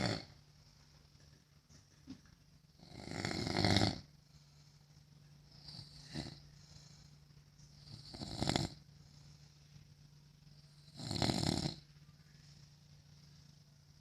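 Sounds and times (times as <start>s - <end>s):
man snoring: 0.0s - 0.4s, 2.8s - 4.1s, 5.5s - 6.4s, 7.8s - 8.8s, 10.6s - 11.8s.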